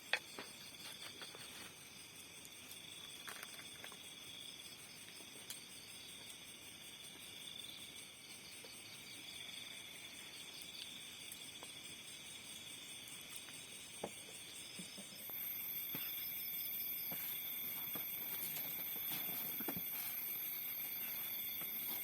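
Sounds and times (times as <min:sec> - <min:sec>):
insects chirping: 0:00.0 - 0:22.0
high loud insect trill: 0:00.1 - 0:22.0.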